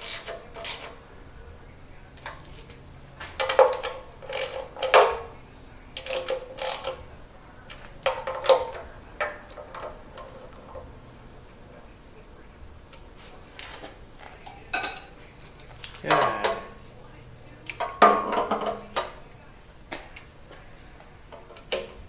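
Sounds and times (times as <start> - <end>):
ratchet wrench clicking: 0.0 - 1.0, 3.4 - 5.0, 6.0 - 7.0.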